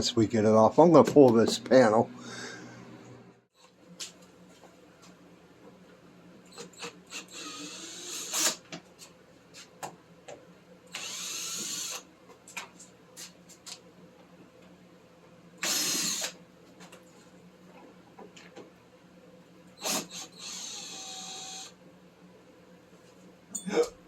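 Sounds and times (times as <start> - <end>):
cordless drill running: 7.1 - 8.6, 10.9 - 12.0, 15.6 - 16.4, 19.8 - 21.8.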